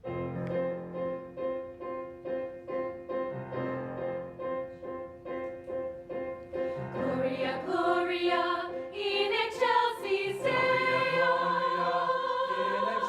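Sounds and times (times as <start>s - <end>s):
piano chord struck repeatedly: 0.0s - 9.0s.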